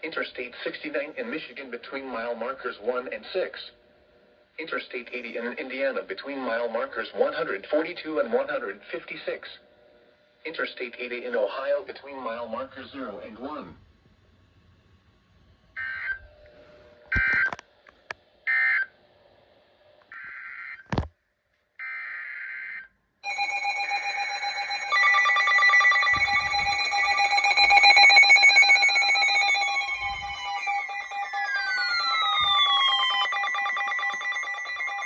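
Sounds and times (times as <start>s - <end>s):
multi-tone alarm with pulsing beeps: 15.8s - 16.2s, 17.1s - 17.6s, 18.5s - 18.9s, 21.8s - 35.0s.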